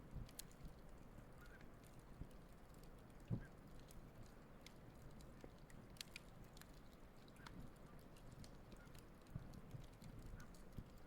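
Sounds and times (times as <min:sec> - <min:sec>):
campfire crackling and popping: 0:00.0 - 0:11.0.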